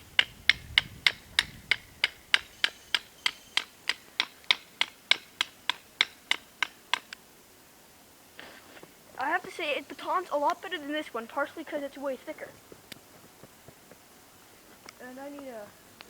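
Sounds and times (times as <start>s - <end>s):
stick knocking on knife spine: 0.2s - 7.2s.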